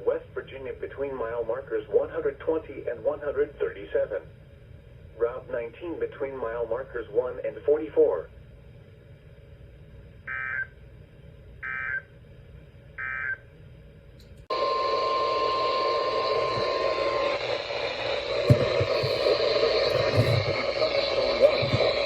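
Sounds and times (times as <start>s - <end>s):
static radio hiss: 0.0s - 4.4s, 5.1s - 8.4s, 14.5s - 22.0s
buzzy digital tone bursts: 14.5s - 22.0s.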